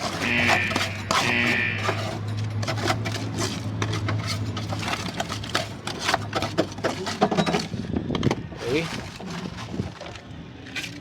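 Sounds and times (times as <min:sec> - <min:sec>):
debris rattling while rummaged: 0:00.0 - 0:11.0.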